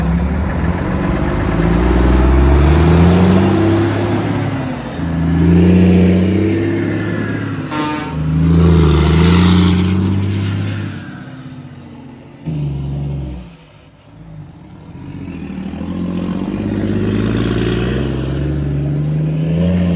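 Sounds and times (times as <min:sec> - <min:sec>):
diesel truck engine revving: 0:00.0 - 0:19.9.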